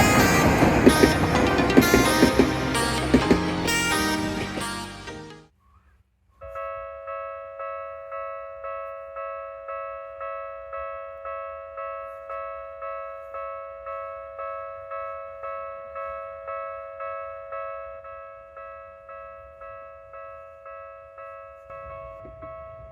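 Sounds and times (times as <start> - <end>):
level-crossing warning bell: 0.0 - 5.4, 6.5 - 22.9
music: 0.0 - 5.5.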